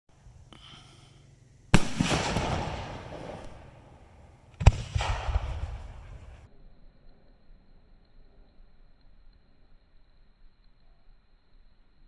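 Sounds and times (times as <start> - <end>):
fireworks bursting: 1.7 - 6.5.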